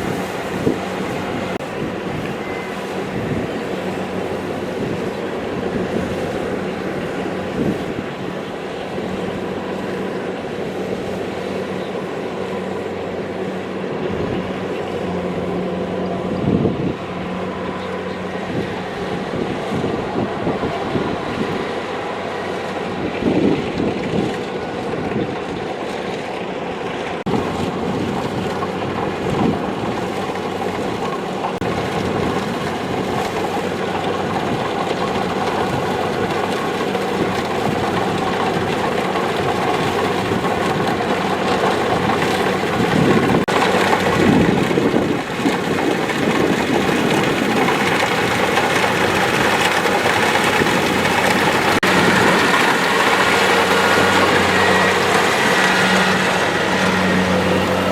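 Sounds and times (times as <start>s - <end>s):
combine harvester running: 0.0s - 57.9s.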